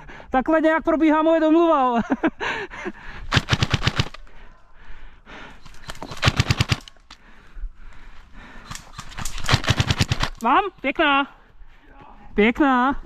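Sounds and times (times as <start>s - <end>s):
airsoft rifle full-auto bursts: 3.3s - 4.2s, 5.8s - 6.9s, 8.9s - 10.4s.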